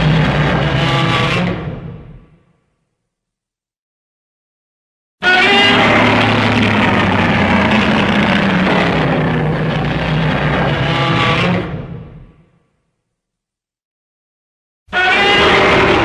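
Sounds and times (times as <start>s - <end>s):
monster roar: 0.0s - 1.6s, 5.3s - 11.8s, 15.1s - 16.0s.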